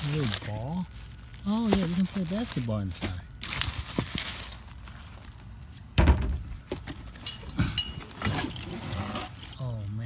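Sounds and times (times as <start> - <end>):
metal parts clinking in box: 6.9 - 10.0.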